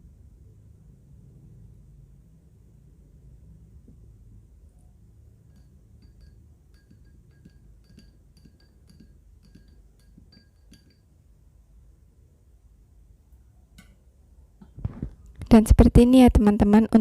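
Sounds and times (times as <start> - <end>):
spoon clinking against glass: 5.4 - 11.2.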